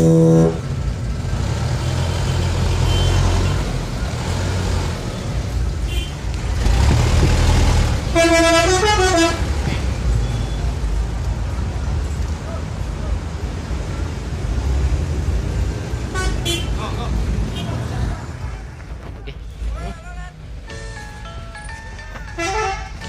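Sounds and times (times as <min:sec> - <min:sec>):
melodic bus horn: 0:00.0 - 0:00.8, 0:08.1 - 0:09.6, 0:16.1 - 0:16.8, 0:20.7 - 0:23.0
bus engine running: 0:00.0 - 0:23.0.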